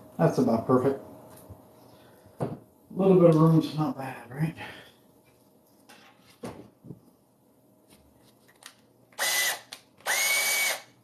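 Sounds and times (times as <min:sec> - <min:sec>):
power drill motor whine: 0:09.2 - 0:11.0.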